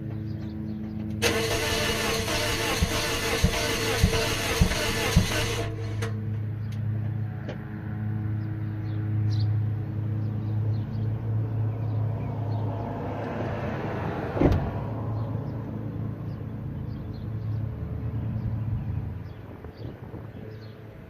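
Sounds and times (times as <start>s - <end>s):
exhaust pop: 1.2s - 6.2s
car engine droning at tailpipe: 1.2s - 6.3s.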